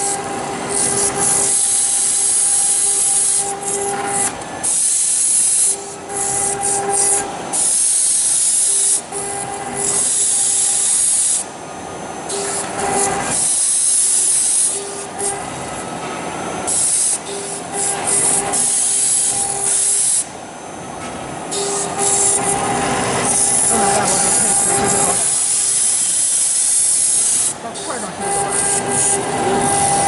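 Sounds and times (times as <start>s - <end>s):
router bit cutting hiss: 0.0s - 30.0s
spindle whine: 8.2s - 30.0s.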